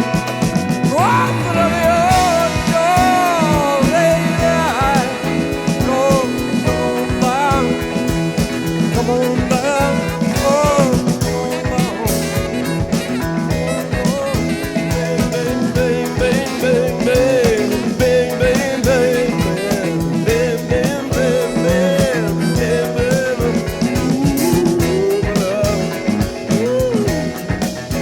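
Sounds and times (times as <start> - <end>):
soft rock song: 0.0 - 28.0.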